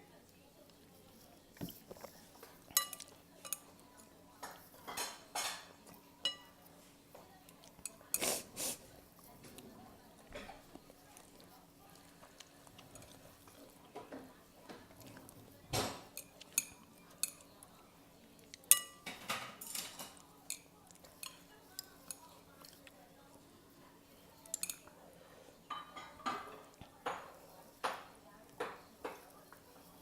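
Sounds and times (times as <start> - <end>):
utensils clinking on a dish: 1.6 - 3.8, 4.4 - 6.6, 18.6 - 22.4, 24.4 - 24.9, 25.7 - 29.3.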